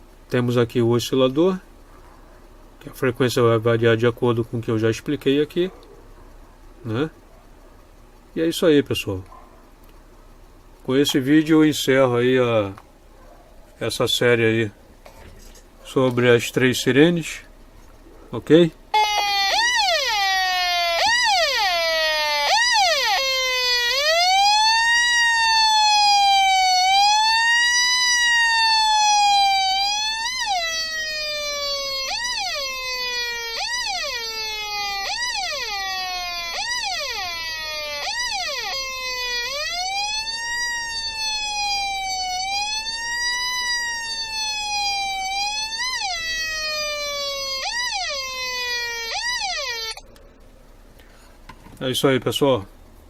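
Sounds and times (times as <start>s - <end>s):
electronic police siren: 18.9s - 50.2s.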